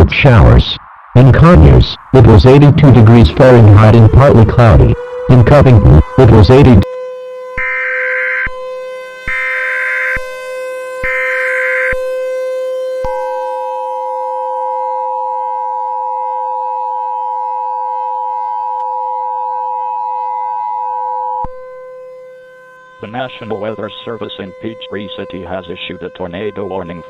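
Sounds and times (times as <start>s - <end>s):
steady low tone: 0.0s - 6.9s, 23.0s - 27.0s
two-tone attention signal: 1.3s - 6.8s.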